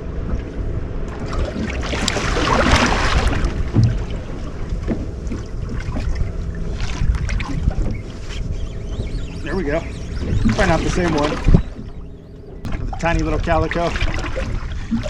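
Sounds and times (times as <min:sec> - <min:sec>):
water moving around a boat: 0:00.0 - 0:15.0
wind buffeting microphone: 0:00.0 - 0:15.0.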